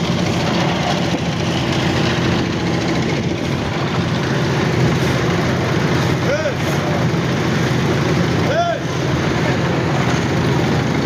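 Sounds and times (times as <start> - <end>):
heavy machinery engine running: 0.0 - 11.0.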